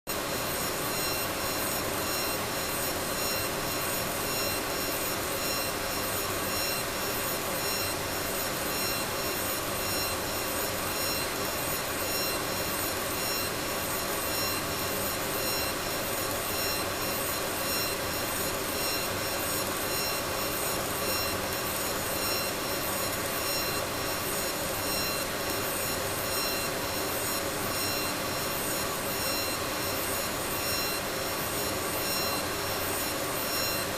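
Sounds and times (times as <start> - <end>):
laser engraver whirring and whining: 0.1 - 33.9.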